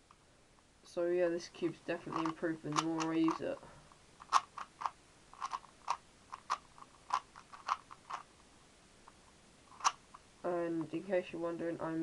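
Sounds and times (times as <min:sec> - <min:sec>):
speed cube plastic clicks: 0:02.0 - 0:08.3, 0:09.8 - 0:10.2.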